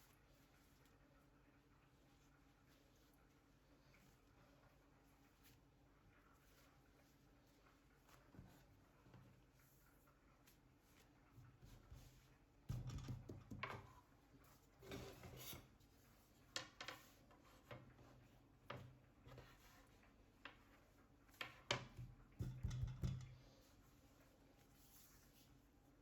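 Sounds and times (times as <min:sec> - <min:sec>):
light knocks and taps: 0:21.4 - 0:23.4.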